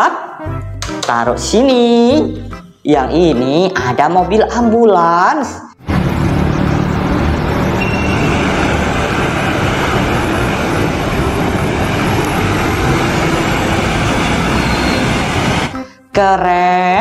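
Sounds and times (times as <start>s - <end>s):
vehicle engine and road noise: 5.8s - 15.8s.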